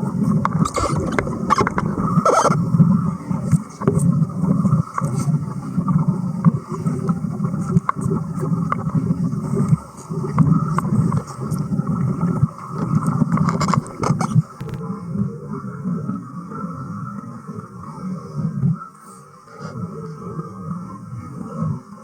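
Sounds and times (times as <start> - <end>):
bubbling rumble of underwater welding: 0.1 - 3.5, 13.2 - 14.8
welding arc crackling: 0.7 - 2.4, 13.8 - 14.8.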